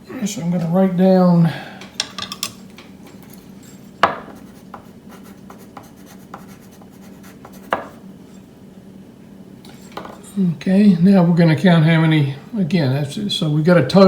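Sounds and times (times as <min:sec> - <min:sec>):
steady low hum: 0:00.0 - 0:14.0
pen scratching on paper: 0:04.3 - 0:07.8.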